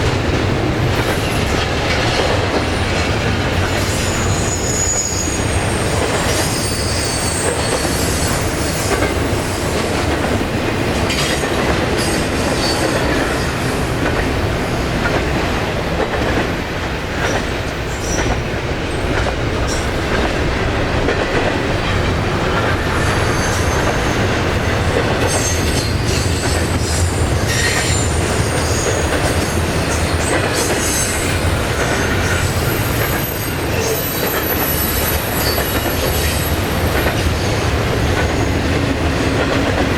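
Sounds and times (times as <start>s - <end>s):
train wheels clacking over rail joints: 0.0s - 39.9s
high-pitched wheel squeals: 3.9s - 9.6s.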